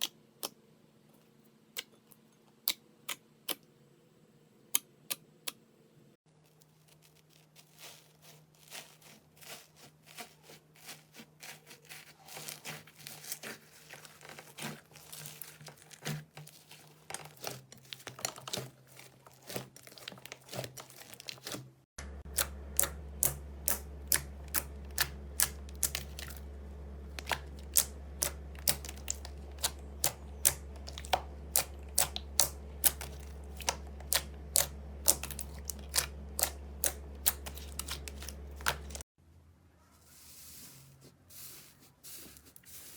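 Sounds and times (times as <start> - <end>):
steady low hum: 22.0 - 39.0
slime crackling and popping: 27.1 - 39.0.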